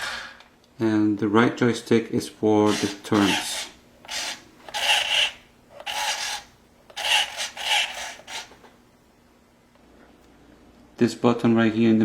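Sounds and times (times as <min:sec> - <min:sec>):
plastic remote control scraping: 0:02.7 - 0:08.7.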